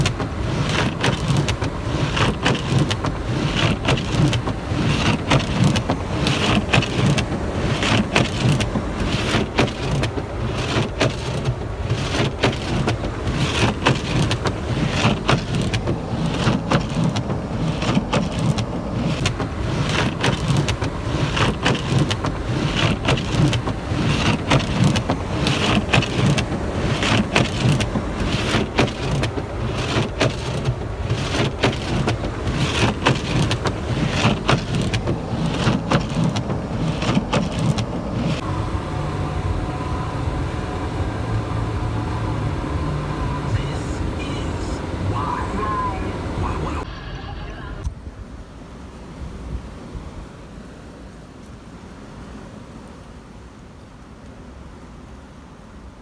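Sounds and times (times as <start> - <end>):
blizzard wind rumbling: 0.0 - 51.0
ice and snow ticking: 41.0 - 46.8.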